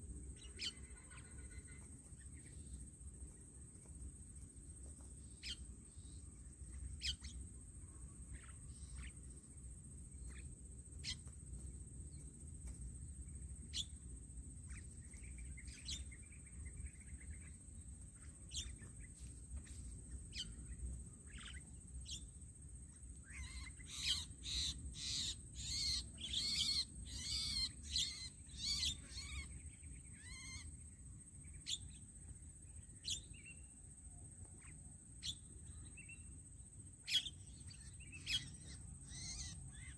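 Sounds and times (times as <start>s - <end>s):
birds whistling and chirping: 0.4s - 2.6s, 5.4s - 6.2s, 7.0s - 7.4s, 13.7s - 14.0s, 14.7s - 17.6s, 18.2s - 19.1s, 20.3s - 20.7s, 23.3s - 30.7s, 33.0s - 33.6s, 34.6s - 36.2s, 37.0s - 39.9s.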